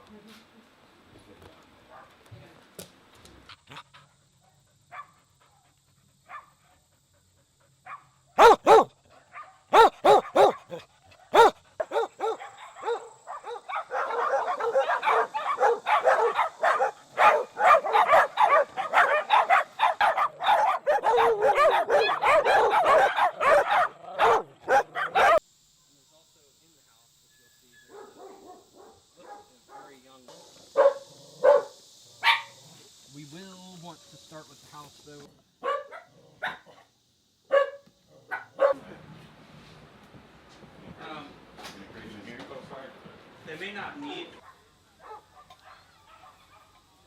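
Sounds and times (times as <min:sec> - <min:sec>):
dogs barking: 0:06.3 - 0:06.6, 0:07.8 - 0:25.4, 0:27.9 - 0:29.9, 0:30.8 - 0:32.6, 0:35.6 - 0:36.8, 0:37.5 - 0:38.8, 0:44.4 - 0:46.8.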